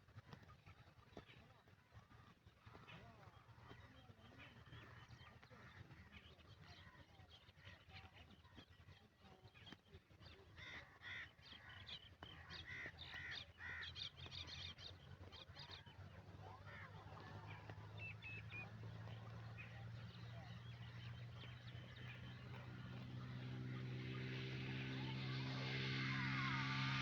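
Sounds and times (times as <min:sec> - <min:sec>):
crows cawing: 0:10.6 - 0:11.7, 0:12.4 - 0:14.0.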